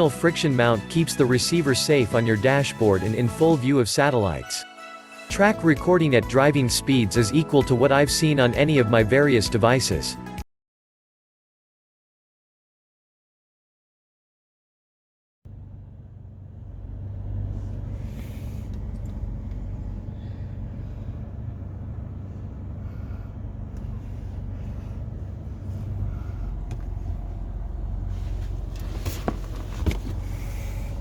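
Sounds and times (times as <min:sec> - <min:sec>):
car engine and road noise: 0:15.5 - 0:31.0.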